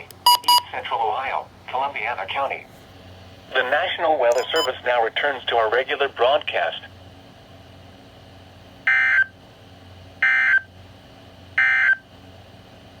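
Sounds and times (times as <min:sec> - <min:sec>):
digital data tone bursts: 0:04.4 - 0:04.8.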